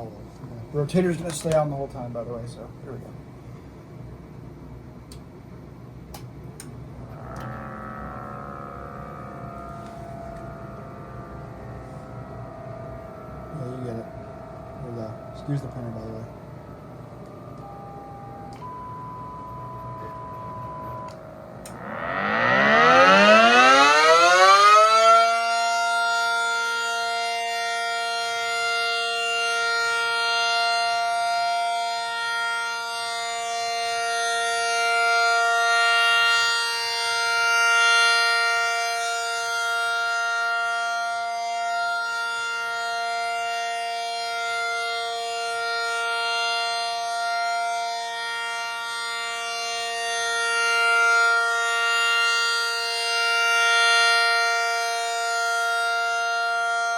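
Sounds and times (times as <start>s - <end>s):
siren steady tone: 0.0s - 1.8s, 3.4s - 56.9s.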